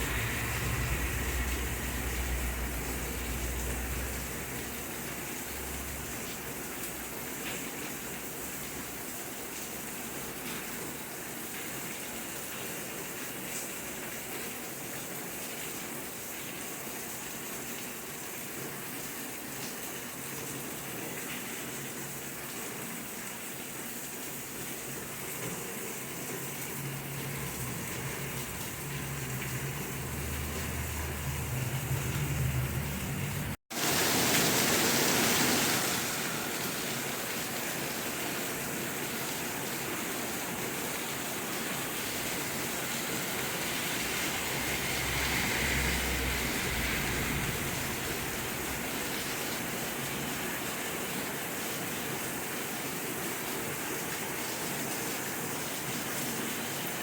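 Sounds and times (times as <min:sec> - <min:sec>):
low rumble: 0:00.0 - 0:04.8, 0:26.5 - 0:33.6, 0:42.7 - 0:50.3
steady rain falling: 0:00.0 - 0:57.0.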